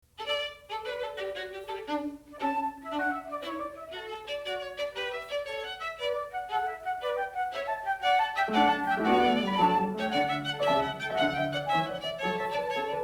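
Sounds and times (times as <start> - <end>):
instrumental melody of stepping notes: 0.2 - 13.0.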